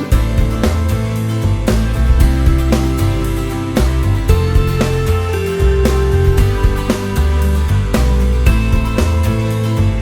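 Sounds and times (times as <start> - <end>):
background music with steady beat: 0.0 - 10.0.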